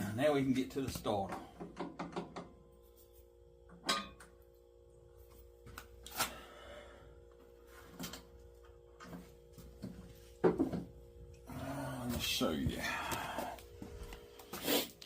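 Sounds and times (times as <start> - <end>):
faint steady hum: 0.0 - 15.0
knocks and rustles of handling: 7.7 - 11.0.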